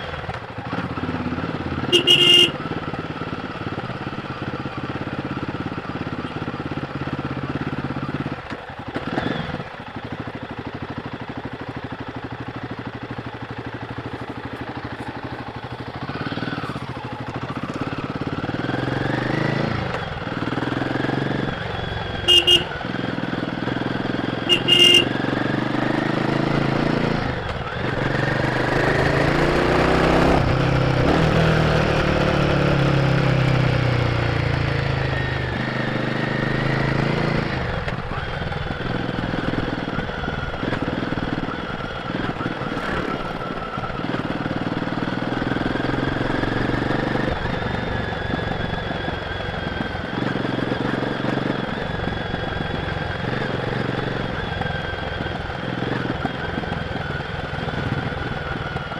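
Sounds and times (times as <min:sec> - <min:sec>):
motorcycle engine while riding: 0:00.0 - 0:58.9.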